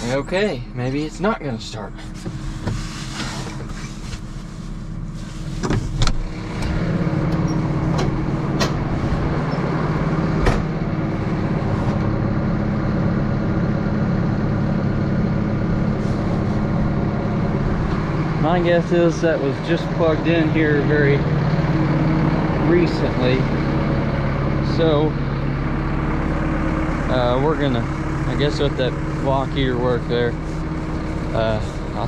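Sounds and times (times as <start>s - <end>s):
diesel tractor engine drone: 0.0s - 32.0s
tractor clicks and knocks: 5.6s - 10.8s.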